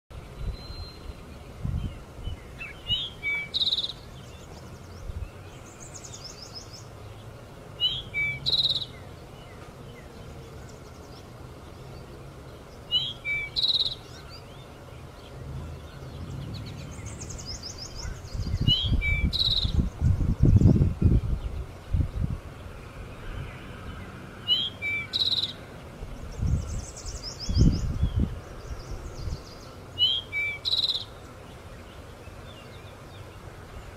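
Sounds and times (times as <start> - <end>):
songbird singing: 0.1 - 33.9
low rumbling noise: 14.6 - 24.5.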